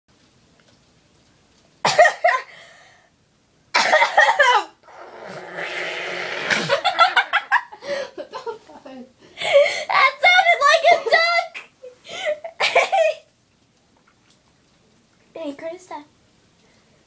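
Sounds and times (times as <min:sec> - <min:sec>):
person coughing: 0:01.9 - 0:02.6, 0:03.8 - 0:04.8
person breathing: 0:02.5 - 0:03.1, 0:07.8 - 0:08.2.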